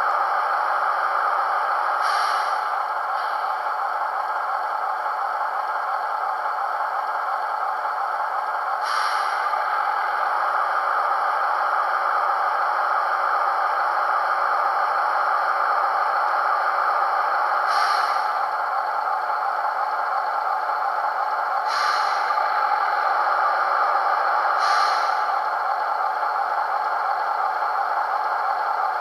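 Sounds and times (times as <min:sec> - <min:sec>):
diesel engine sound from speaker: 0:00.0 - 0:29.0
brief hisses: 0:02.0 - 0:02.6, 0:08.9 - 0:09.4.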